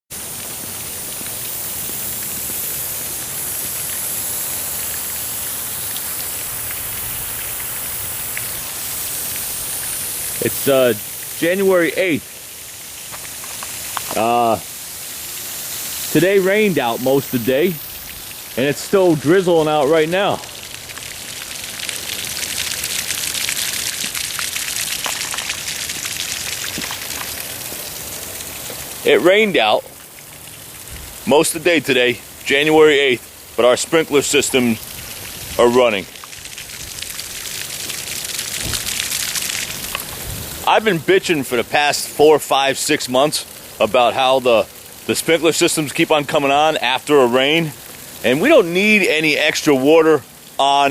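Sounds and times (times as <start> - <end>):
sprinklers spraying water: 0.1 - 50.9
faint drips: 0.2 - 50.9.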